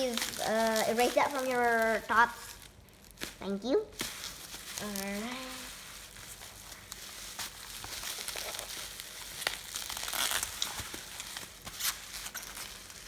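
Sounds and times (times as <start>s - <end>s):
packaging crinkling and rustling: 0.0s - 13.0s.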